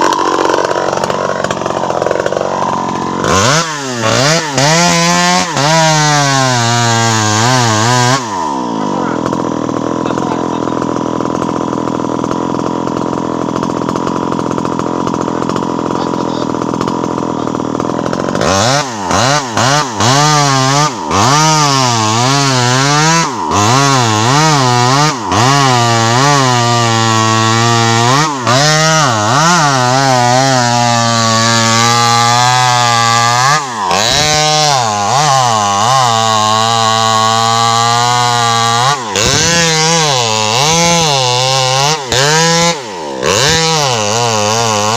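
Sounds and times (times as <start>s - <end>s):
chainsaw engine running: 0.0s - 44.9s.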